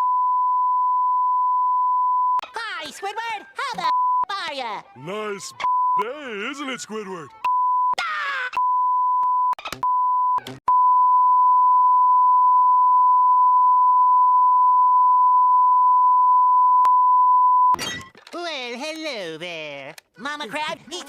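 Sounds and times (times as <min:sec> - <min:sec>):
censor bleep tone: 0:00.0 - 0:02.4, 0:07.4 - 0:08.0, 0:08.6 - 0:17.8.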